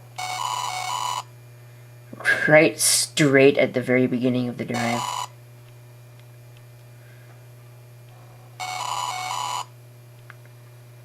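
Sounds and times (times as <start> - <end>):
steady low hum: 0.0 - 11.0
computer beep: 8.6 - 9.7.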